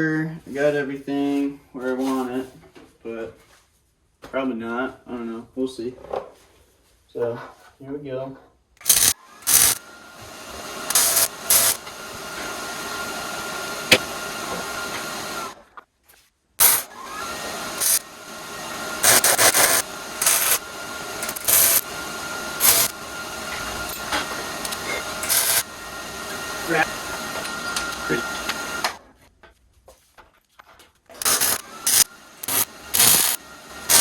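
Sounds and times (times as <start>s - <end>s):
electric arc welding hissing: 8.8s - 9.8s, 10.8s - 11.9s, 13.8s - 15.0s, 16.6s - 16.9s, 17.8s - 18.2s, 18.9s - 27.0s, 27.9s - 28.6s, 31.2s - 34.0s
sharp arc bursts: 8.8s - 9.8s, 10.9s - 11.8s, 16.6s - 16.9s, 17.8s - 18.0s, 19.0s - 20.6s, 21.2s - 21.8s, 22.6s - 23.0s, 24.6s - 25.7s, 31.2s - 34.0s.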